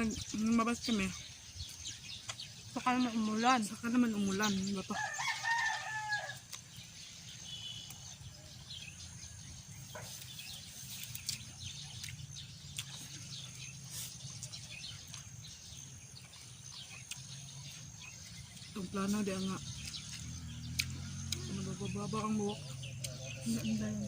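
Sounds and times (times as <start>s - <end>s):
small ticks: 19.6s - 21.6s.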